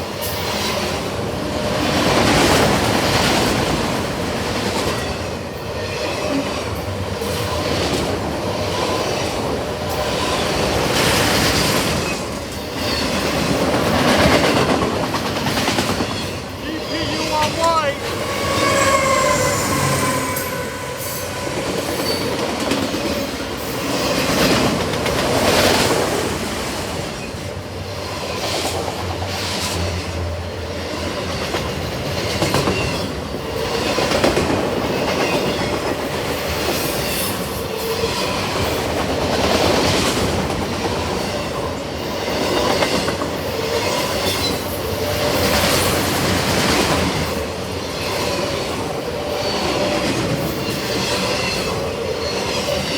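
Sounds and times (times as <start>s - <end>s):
train wheels rumbling on rail: 0.0s - 52.9s
high wheel squeals: 16.6s - 22.6s.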